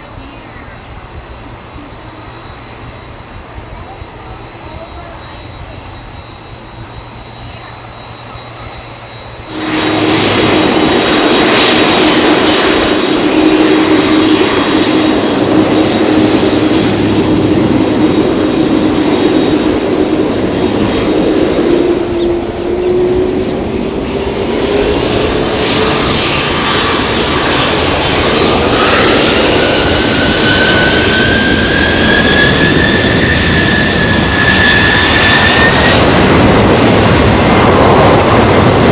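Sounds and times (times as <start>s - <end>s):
jet engines roaring: 0.0s - 38.9s
engine whine rising in pitch: 8.8s - 38.9s.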